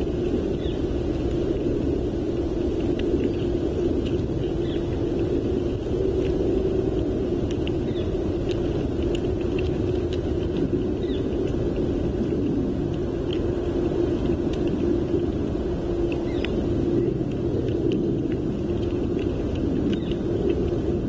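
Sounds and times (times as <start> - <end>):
faint steady hum: 0.0 - 21.0
low outdoor rumble: 0.0 - 21.0
faint high ticks: 16.0 - 16.6, 17.2 - 20.8.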